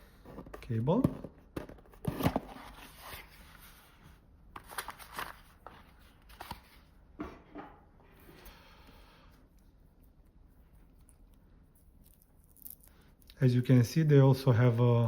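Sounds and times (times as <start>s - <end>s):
packaging rustling: 4.6s - 6.8s.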